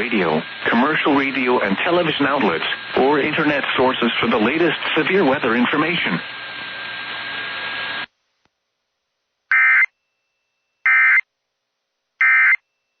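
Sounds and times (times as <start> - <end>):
radio hiss: 0.0 - 8.1.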